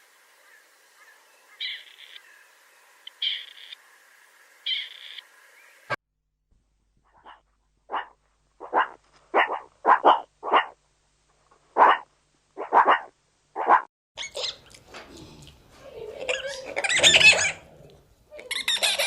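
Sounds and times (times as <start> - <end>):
dog barking: 7.2 - 10.8, 11.8 - 13.9.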